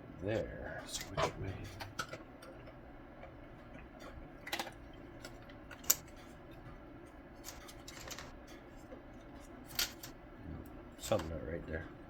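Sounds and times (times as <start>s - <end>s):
plastic parts clicking and scraping: 7.4s - 8.4s.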